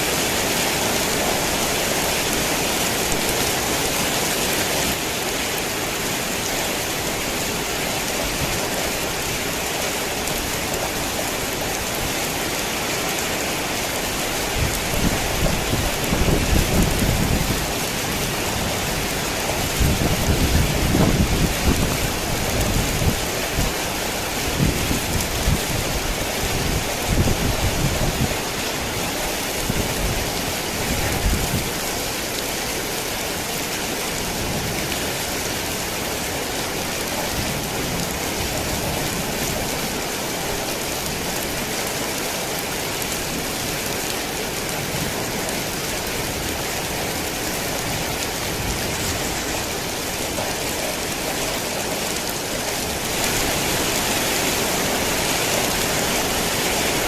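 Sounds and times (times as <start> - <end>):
heavy rain pouring: 0.0 - 57.0.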